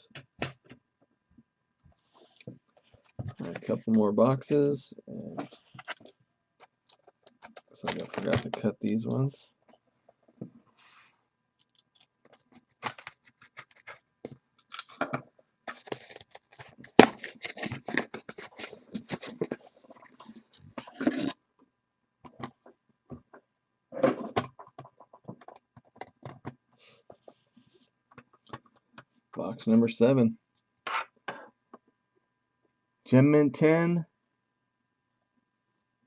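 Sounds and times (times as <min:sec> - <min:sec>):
plastic and cardboard rustling: 0:02.0 - 0:03.9, 0:05.3 - 0:14.8, 0:15.7 - 0:21.3
packaging being cut open: 0:12.6 - 0:14.0, 0:15.7 - 0:19.5.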